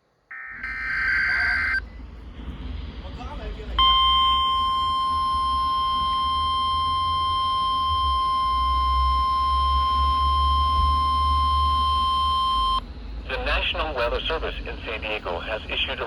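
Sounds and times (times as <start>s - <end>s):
steady warning alarm tone: 0.3s - 1.8s, 3.8s - 12.8s
low hum: 0.3s - 16.0s.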